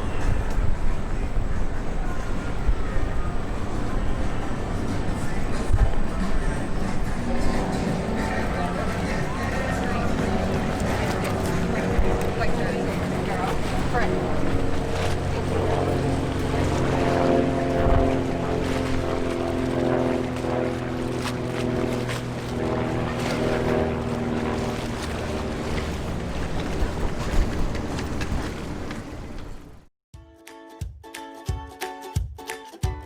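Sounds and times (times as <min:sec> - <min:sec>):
low engine hum: 0:00.0 - 0:29.9
wind noise on microphone: 0:00.0 - 0:29.9.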